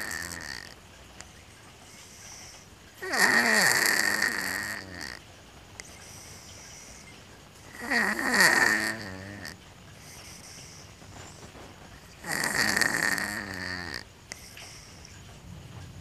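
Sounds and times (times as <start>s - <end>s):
cat snoring: 0.0s - 0.8s, 1.8s - 5.2s, 7.7s - 15.2s.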